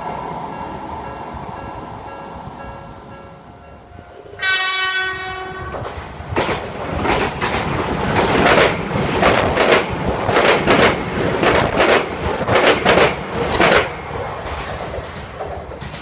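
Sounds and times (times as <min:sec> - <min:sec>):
train passing rumble: 0:00.0 - 0:16.0
train horn: 0:03.4 - 0:05.8
wheels clacking over rail joints: 0:05.7 - 0:16.0.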